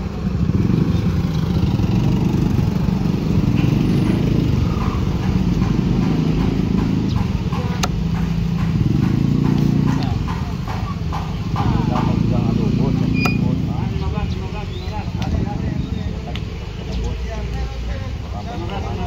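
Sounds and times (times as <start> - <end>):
sharp click: 13.2 - 13.4.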